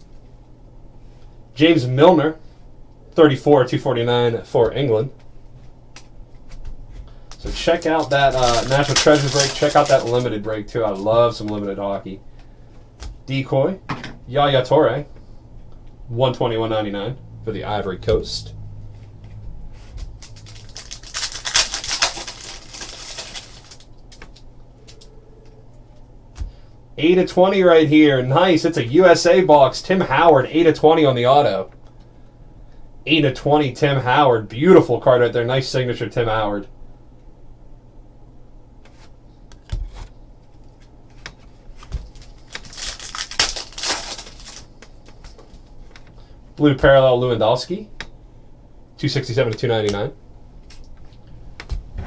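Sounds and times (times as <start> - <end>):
cards and packaging rustling: 6.0 - 11.8, 19.2 - 25.2, 39.8 - 45.8.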